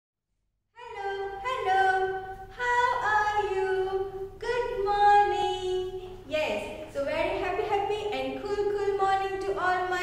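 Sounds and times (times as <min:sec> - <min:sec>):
woman singing unaccompanied: 0:00.8 - 0:06.0.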